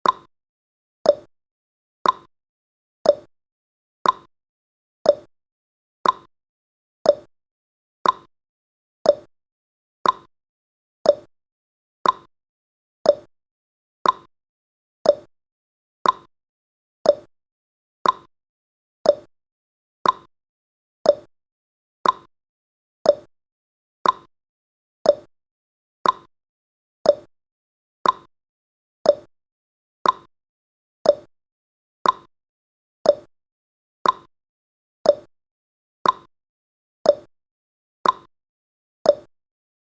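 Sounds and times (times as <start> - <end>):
timer ticking: 0.0 - 0.3, 1.1 - 1.3, 2.0 - 2.3, 3.0 - 3.3, 4.0 - 4.3, 5.1 - 5.3, 6.0 - 6.3, 7.0 - 7.3, 8.0 - 8.3, 9.0 - 9.3, 10.0 - 10.3, 11.0 - 11.3, 12.0 - 12.3, 13.0 - 13.3, 14.0 - 14.3, 15.0 - 15.3, 16.0 - 16.3, 17.0 - 17.3, 18.0 - 18.3, 19.0 - 19.3, 20.0 - 20.3, 21.0 - 21.3, 22.0 - 22.3, 23.0 - 23.3, 24.0 - 24.3, 25.0 - 25.3, 26.0 - 26.3, 27.0 - 27.3, 28.0 - 28.3, 29.0 - 29.3, 30.0 - 30.3, 31.0 - 31.3, 32.0 - 32.3, 33.0 - 33.3, 34.0 - 34.3, 35.0 - 35.3, 36.0 - 36.3, 37.1 - 37.3, 38.0 - 38.3, 39.1 - 39.3.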